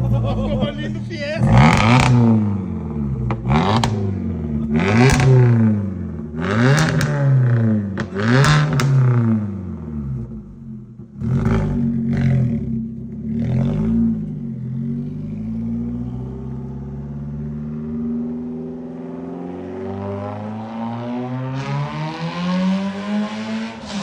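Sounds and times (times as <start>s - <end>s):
exhaust cracks: 0.0s - 16.2s
car engine revving: 0.0s - 24.0s.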